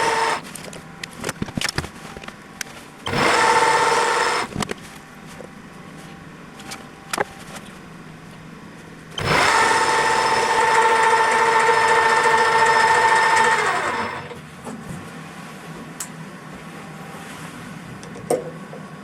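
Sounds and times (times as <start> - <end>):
metal lathe running: 0.0 - 0.5, 3.1 - 4.5, 9.2 - 14.4.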